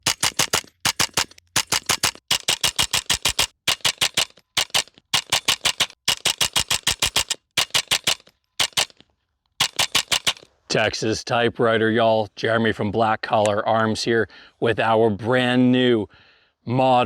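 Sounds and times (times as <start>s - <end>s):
rapid sharp clicks: 0.0s - 10.5s.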